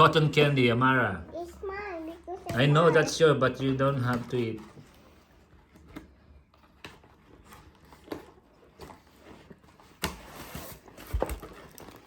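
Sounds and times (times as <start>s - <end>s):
packaging crinkling rustle: 6.6s - 12.0s.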